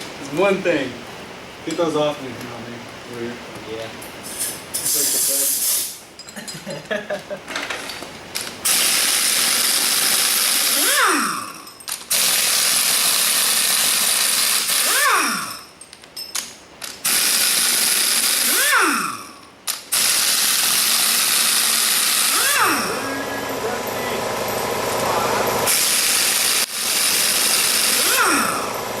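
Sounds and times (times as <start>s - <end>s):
pneumatic air tool hissing: 4.2s - 6.0s, 8.6s - 15.7s, 17.0s - 23.0s, 25.7s - 28.8s
air tool spinning down whine: 8.7s - 15.6s, 17.1s - 19.3s, 19.9s - 29.0s.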